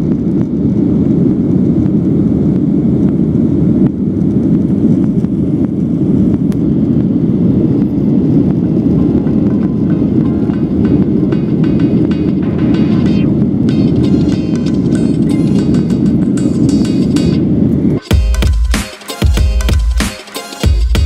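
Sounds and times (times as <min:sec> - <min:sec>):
jet engines in cabin: 0:00.0 - 0:21.0.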